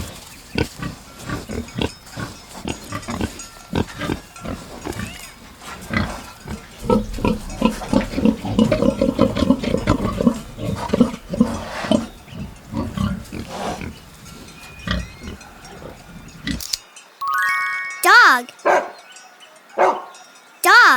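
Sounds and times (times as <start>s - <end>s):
pig grunting: 0.0s - 16.6s.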